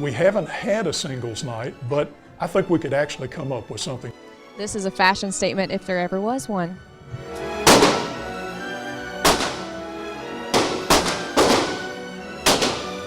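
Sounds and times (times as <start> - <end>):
background music: 0.0 - 13.0
gunshots with ringing tail: 7.7 - 8.4, 9.2 - 9.8, 10.5 - 13.0.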